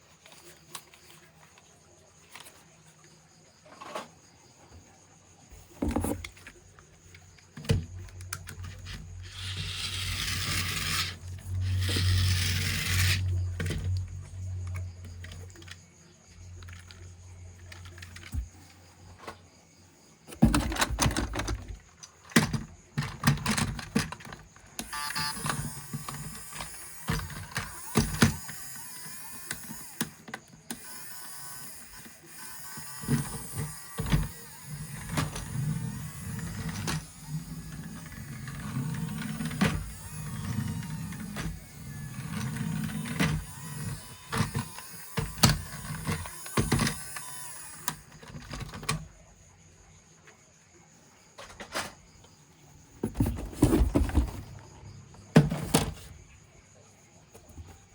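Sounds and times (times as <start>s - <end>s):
small motor whirring: 7.8s - 18.5s, 24.8s - 49.2s.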